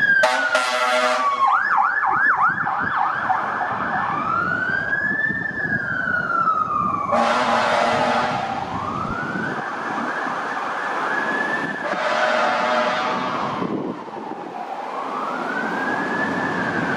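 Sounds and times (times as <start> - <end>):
emergency vehicle siren wailing: 0.0 - 16.9
horn blasts: 0.2 - 1.4, 7.1 - 8.6, 11.8 - 13.4.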